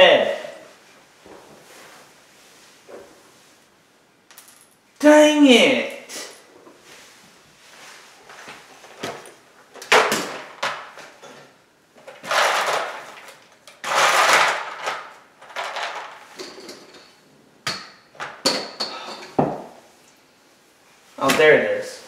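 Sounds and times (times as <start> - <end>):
plastic pieces rattling: 12.0 - 16.4.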